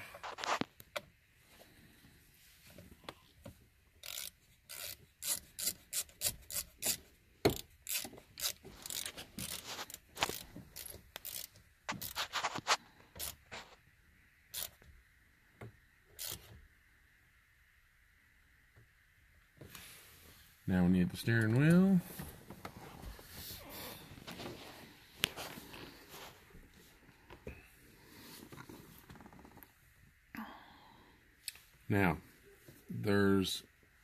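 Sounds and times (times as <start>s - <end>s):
hand ratchet clicking: 4.0s - 12.2s, 14.5s - 14.8s, 16.2s - 16.5s.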